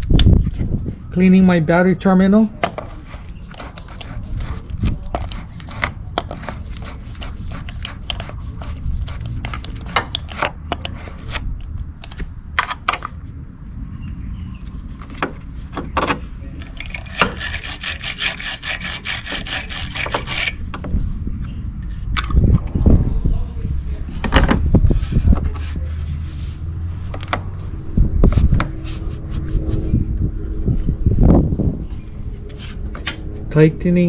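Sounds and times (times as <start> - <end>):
wire brush scraping metal: 16.6 - 20.6.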